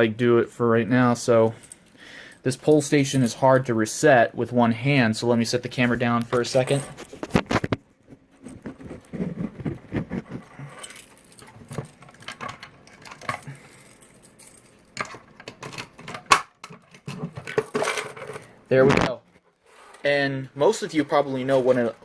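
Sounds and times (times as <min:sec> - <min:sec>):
keys jangling: 0:01.5 - 0:03.4, 0:06.3 - 0:07.1, 0:10.5 - 0:15.2.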